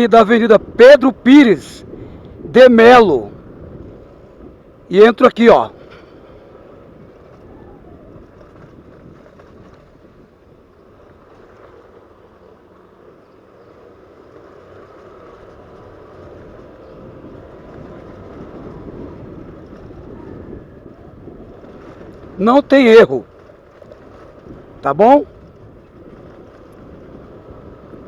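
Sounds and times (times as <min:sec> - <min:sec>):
wind on microphone: 0:00.0 - 0:12.2, 0:14.6 - 0:28.0
motorcycle engine: 0:05.7 - 0:28.0.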